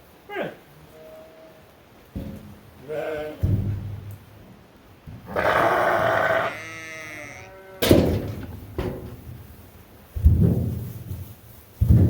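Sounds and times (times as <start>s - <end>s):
sheep bleating: 5.3s - 7.8s.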